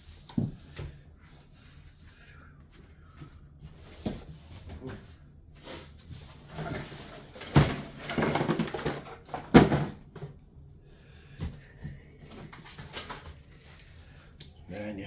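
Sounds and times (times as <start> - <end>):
cardboard rustling and scraping: 3.7 - 8.0.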